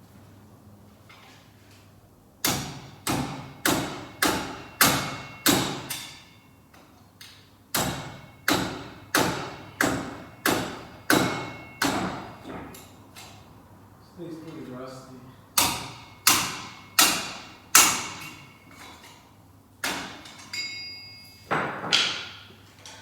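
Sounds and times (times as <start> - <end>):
hammer striking metal: 2.4 - 6.5, 7.7 - 12.5, 15.6 - 18.8.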